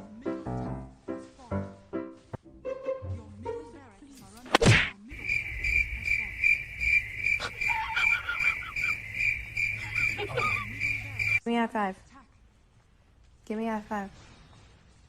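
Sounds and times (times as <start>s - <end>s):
high chirping: 5.1s - 11.4s.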